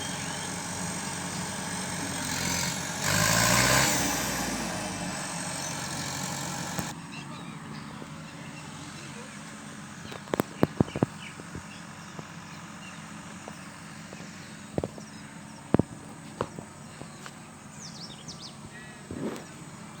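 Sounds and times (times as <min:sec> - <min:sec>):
high bird-like chirps: 0:00.0 - 0:02.5
low engine hum: 0:00.0 - 0:20.0.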